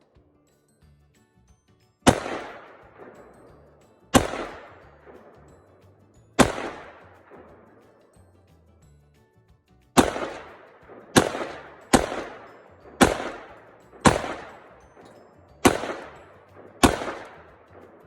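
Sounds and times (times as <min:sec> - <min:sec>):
rifle shots echoing: 0:02.0 - 0:05.4, 0:06.4 - 0:08.0, 0:10.0 - 0:18.0.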